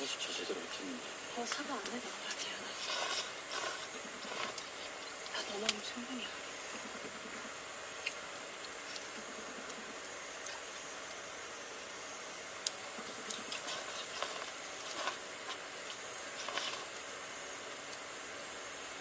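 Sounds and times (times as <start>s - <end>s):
steady hiss: 0.0s - 19.0s
faint clicks and ticks: 1.4s - 5.9s.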